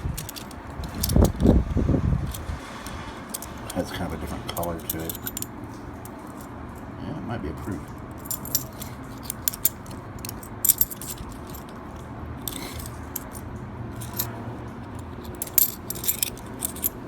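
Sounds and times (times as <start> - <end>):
coins clinking: 0.0 - 1.6, 3.3 - 6.6, 8.1 - 13.4, 14.0 - 14.3, 14.9 - 17.0.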